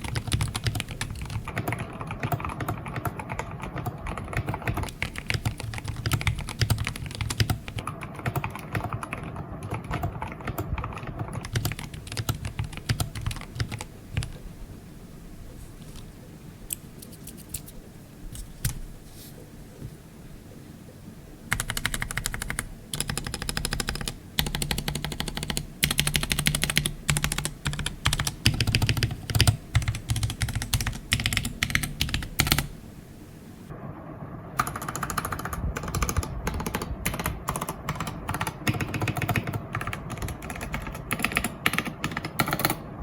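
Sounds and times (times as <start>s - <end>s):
fast typing on keyboard: 0.0s - 14.4s, 18.4s - 18.8s, 21.5s - 32.7s, 34.6s - 42.8s.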